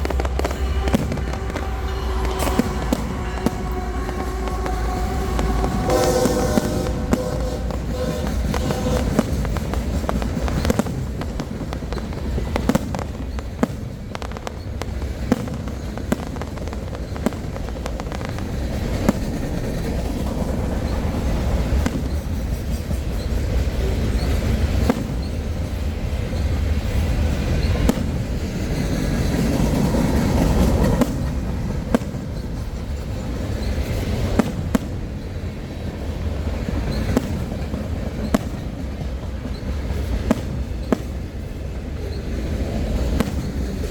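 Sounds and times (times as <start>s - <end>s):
low rumble: 0.0s - 11.5s
fireworks banging: 0.0s - 43.9s.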